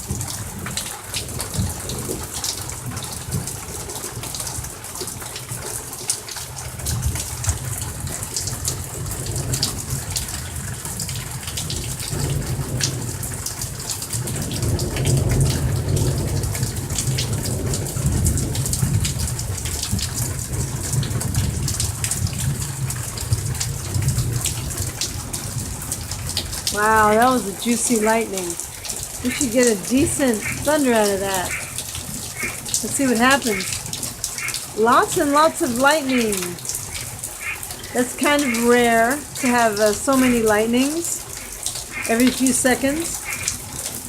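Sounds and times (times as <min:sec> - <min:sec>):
heavy rain: 0:00.0 - 0:44.0
raindrops ticking on surfaces: 0:00.0 - 0:44.0
rolling thunder: 0:11.6 - 0:26.7.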